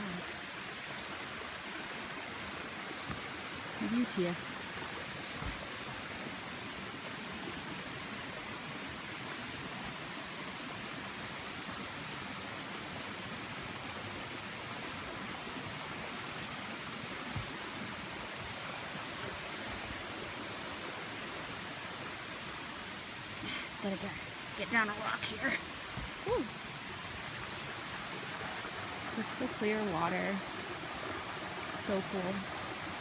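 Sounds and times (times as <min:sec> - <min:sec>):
waterfall and rapids rushing: 0:00.0 - 0:33.0.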